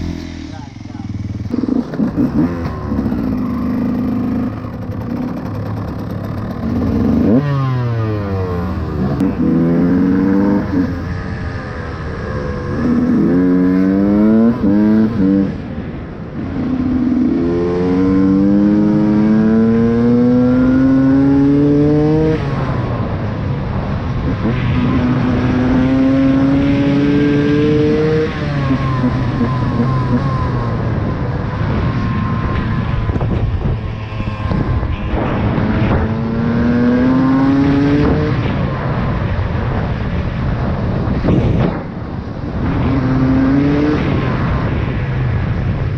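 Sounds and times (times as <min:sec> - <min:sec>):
two-stroke engine revving: 0:00.0 - 0:10.9.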